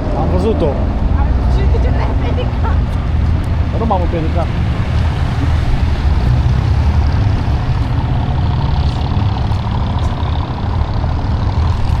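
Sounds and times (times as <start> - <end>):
vehicle engines rumbling: 0.0 - 12.0.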